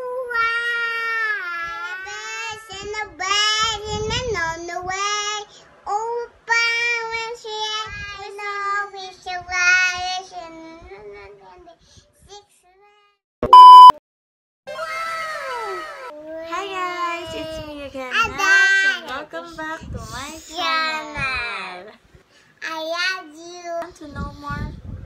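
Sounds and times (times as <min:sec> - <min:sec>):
child singing: 0:00.0 - 0:13.2
loud beep tone: 0:13.4 - 0:14.0.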